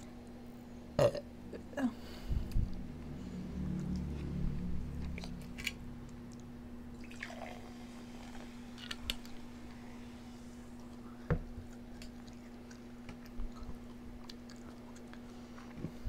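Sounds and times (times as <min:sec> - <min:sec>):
faint hum: 0:00.0 - 0:16.0
wet chewing: 0:03.7 - 0:06.5, 0:10.7 - 0:16.0.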